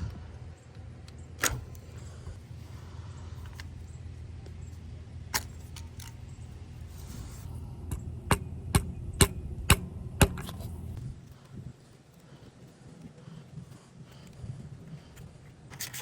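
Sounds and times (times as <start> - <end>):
low steady hum: 0.0 - 16.0
sharp metal taps: 7.9 - 10.7.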